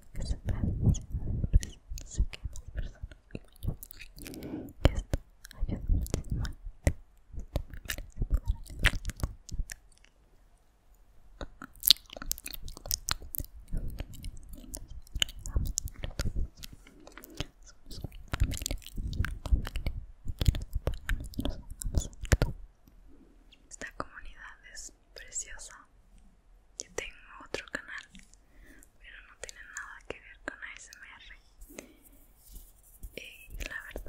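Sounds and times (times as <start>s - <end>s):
wet mouth clicks and smacks: 0.1s - 10.2s, 11.4s - 22.6s, 26.8s - 28.4s, 29.2s - 30.0s, 33.2s - 34.0s.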